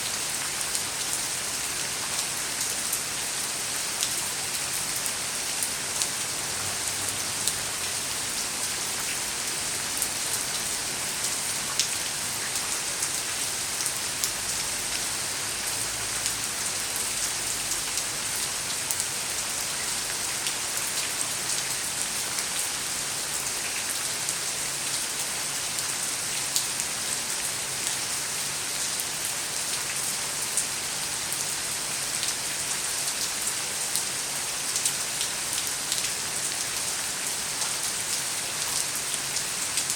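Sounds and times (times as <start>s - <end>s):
rain on hard surfaces: 0.0s - 39.9s.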